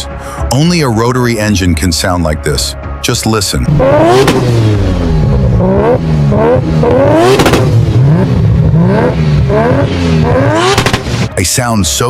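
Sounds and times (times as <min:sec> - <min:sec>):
rotary engine revving: 0:03.7 - 0:11.3.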